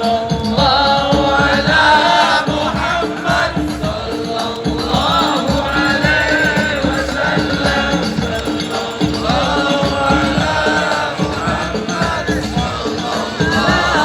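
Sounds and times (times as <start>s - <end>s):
many voices singing devotional song: 0.0s - 14.0s
percussion beat: 3.7s - 12.5s.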